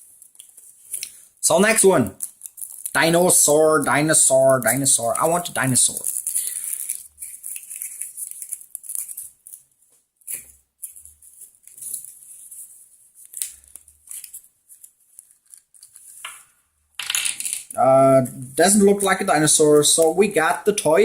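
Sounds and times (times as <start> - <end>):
small clicks and rustles: 0.0 - 1.4, 2.2 - 3.0, 6.0 - 16.6
foil wrapper tearing and crinkling: 0.2 - 16.3.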